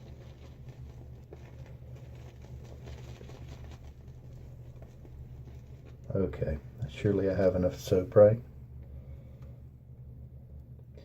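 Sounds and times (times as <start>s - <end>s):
shaving brush swirling on wet soap: 0.0s - 8.1s
steady low hum: 0.0s - 11.0s.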